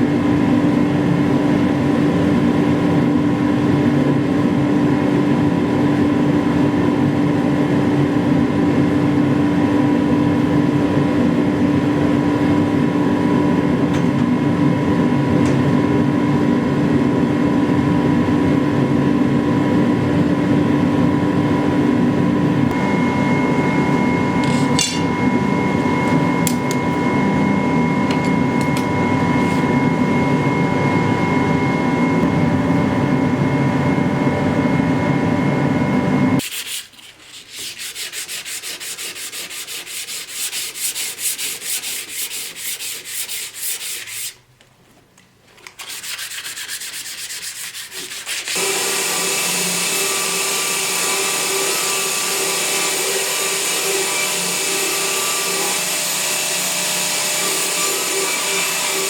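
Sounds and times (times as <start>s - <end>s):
hand-sanding strokes: 36.4s - 44.4s, 45.8s - 50.2s
power grinder running: 47.7s - 59.0s.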